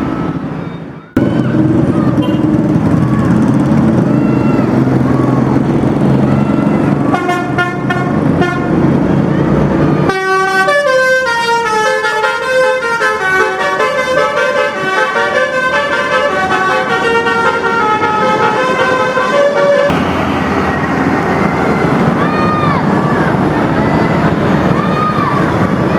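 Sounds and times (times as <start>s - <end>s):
multi-tone bus horn: 0.0s - 2.8s, 6.1s - 20.0s
loud low rumble: 0.0s - 10.1s, 19.8s - 25.9s.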